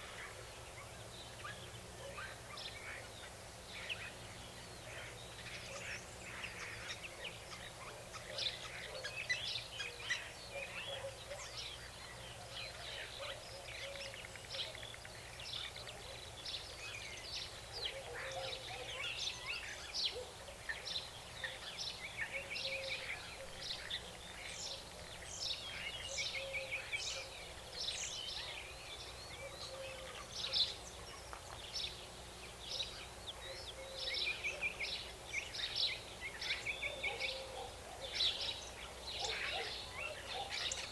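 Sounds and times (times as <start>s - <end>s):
many birds chirping and singing: 0.0s - 40.9s.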